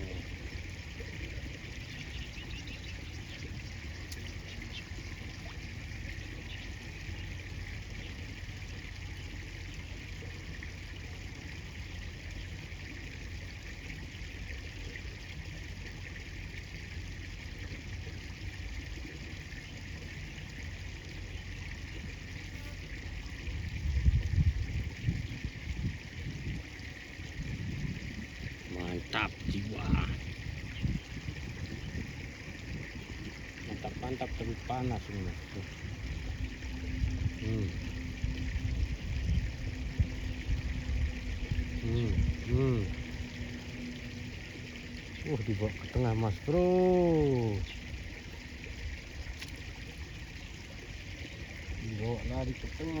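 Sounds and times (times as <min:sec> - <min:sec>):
river water running: 0:00.0 - 0:53.0
uneven low rumble: 0:27.3 - 0:46.4.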